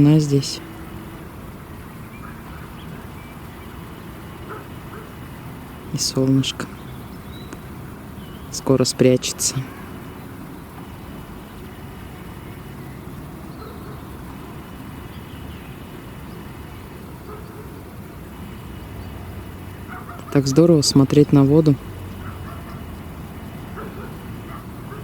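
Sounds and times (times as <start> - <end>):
river rumble: 0.0 - 25.0
faint bird chirps: 1.9 - 5.2, 5.9 - 8.8, 9.6 - 19.3.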